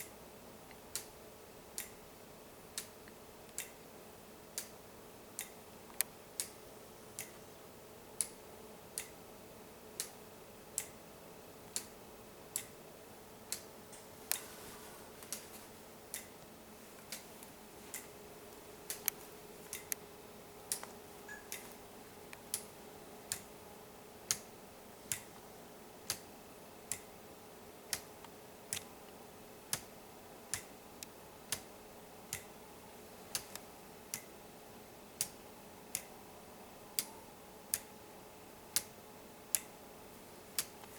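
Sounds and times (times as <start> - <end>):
pendulum clock ticking: 0.9 - 2.0, 2.7 - 7.4, 8.2 - 9.3, 10.0 - 11.0, 11.6 - 14.5, 15.3 - 18.2, 18.8 - 23.6, 24.2 - 34.4, 35.0 - 39.8
extra clock clicks: 11.7 - 12.8, 16.1 - 16.4, 23.3 - 23.5, 25.1 - 25.4, 26.0 - 26.3, 26.9 - 27.1, 27.9 - 29.0, 30.5 - 31.7, 32.3 - 32.6, 38.7 - 39.7.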